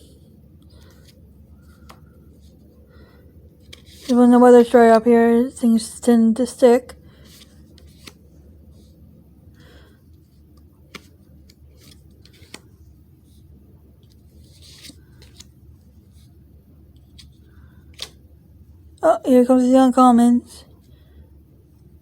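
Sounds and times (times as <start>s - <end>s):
low steady hum: 0.0s - 22.0s
cards rustling and sliding: 0.6s - 2.7s, 3.6s - 4.2s, 7.1s - 8.9s, 10.1s - 16.4s, 17.0s - 18.2s.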